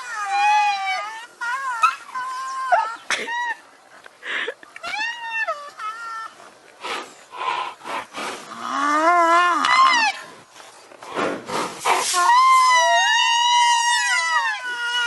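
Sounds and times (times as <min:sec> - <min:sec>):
rhinoceros breathy blasts: 0:11.0 - 0:12.2
rhinoceros squealing call: 0:12.1 - 0:15.0.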